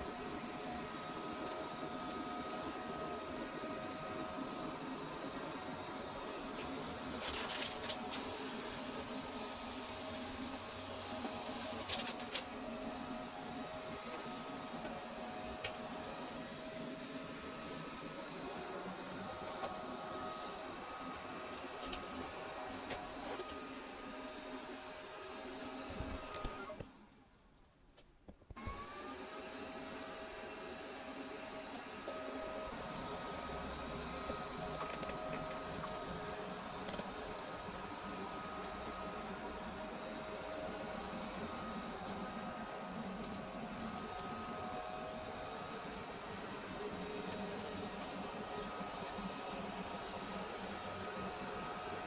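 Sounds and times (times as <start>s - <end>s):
robot vacuum motor whining: 25.8s - 26.9s, 28.6s - 52.0s.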